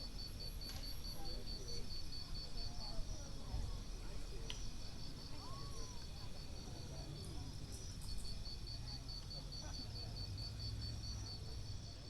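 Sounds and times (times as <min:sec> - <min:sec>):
insects trilling: 0:05.1 - 0:06.1.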